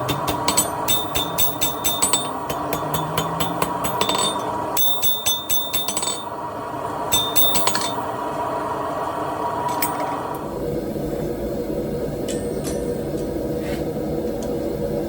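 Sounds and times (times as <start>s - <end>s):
hammer striking steel on anvil: 0.0s - 6.4s, 7.1s - 8.1s
steady hum: 0.0s - 15.0s.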